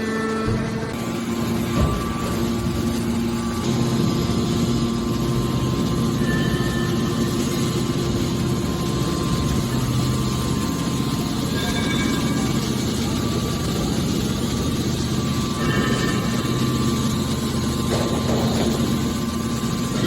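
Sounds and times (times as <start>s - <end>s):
hydraulic baler machine drone: 0.0s - 20.0s.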